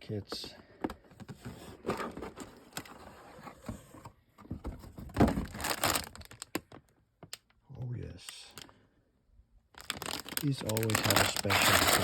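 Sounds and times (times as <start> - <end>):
cardboard boxes being handled: 0.8 - 6.0.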